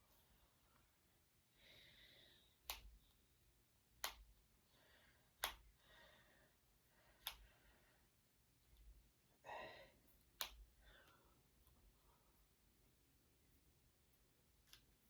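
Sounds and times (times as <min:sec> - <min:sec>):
knuckles cracking: 0:02.6 - 0:03.1, 0:05.4 - 0:05.8, 0:07.2 - 0:07.5, 0:10.3 - 0:11.8.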